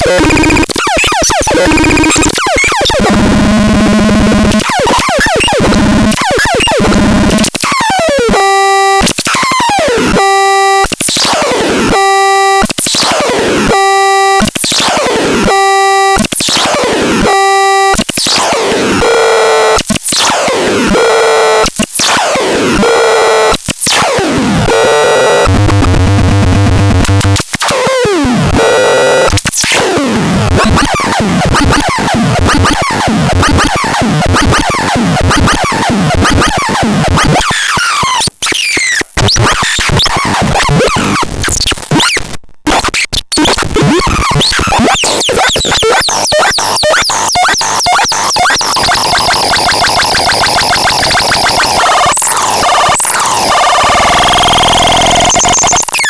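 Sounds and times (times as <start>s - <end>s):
steady beeping tones: 48.3s - 56.0s
electronic falling sweeps: 48.8s - 55.8s.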